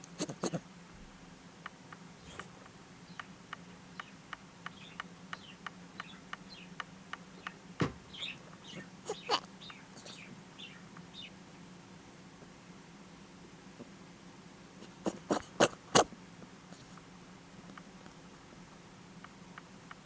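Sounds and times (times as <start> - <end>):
small animal sneezing: 0.1 - 0.6, 8.7 - 9.4, 10.0 - 10.3, 14.8 - 16.1.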